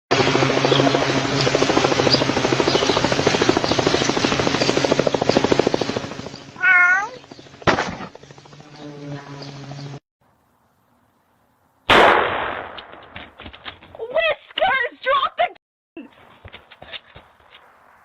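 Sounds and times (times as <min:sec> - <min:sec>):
cat meowing: 0:06.6 - 0:07.2.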